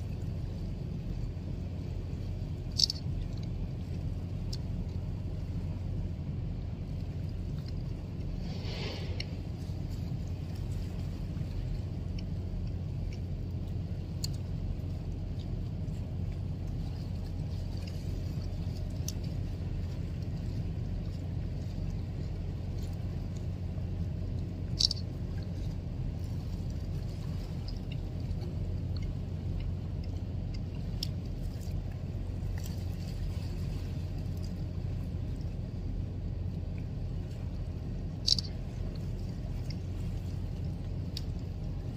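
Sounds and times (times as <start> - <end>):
low engine rumble: 0.0 - 41.9
faint clicks: 38.2 - 40.3.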